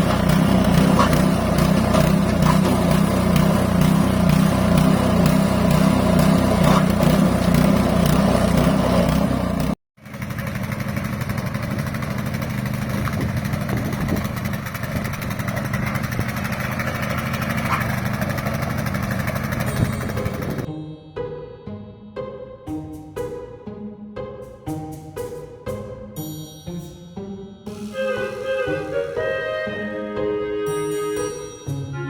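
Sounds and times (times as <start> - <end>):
small petrol engine running: 0.0 - 20.7.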